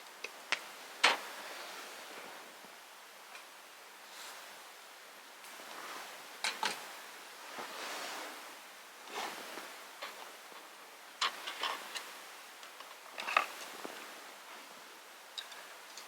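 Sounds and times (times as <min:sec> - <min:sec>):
soft rushing hiss: 0:00.0 - 0:16.0.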